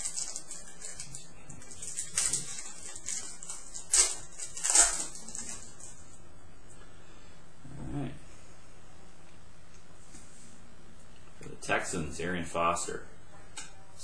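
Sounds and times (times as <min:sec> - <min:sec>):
foil wrapper ripping: 0:00.0 - 0:06.2
foil wrappers crinkling: 0:00.0 - 0:06.2.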